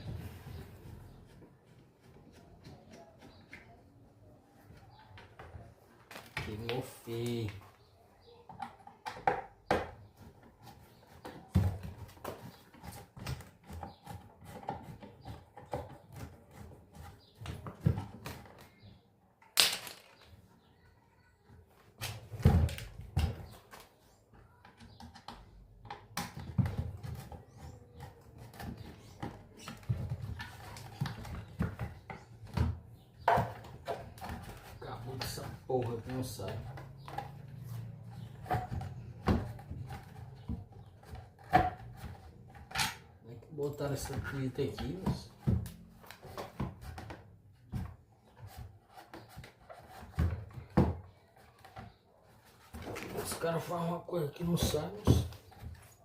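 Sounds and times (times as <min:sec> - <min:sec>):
knocks and thuds on wood: 0:08.5 - 0:18.9, 0:24.4 - 0:43.0.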